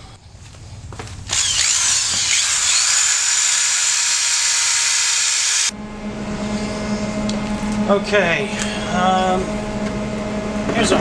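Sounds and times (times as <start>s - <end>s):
power tool grinding metal pipe: 1.3s - 5.7s.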